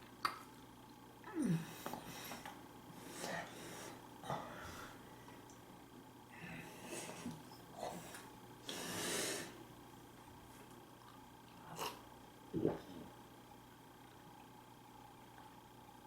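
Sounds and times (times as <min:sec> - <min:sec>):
noisy breath: 0:01.6 - 0:05.4, 0:06.3 - 0:09.6.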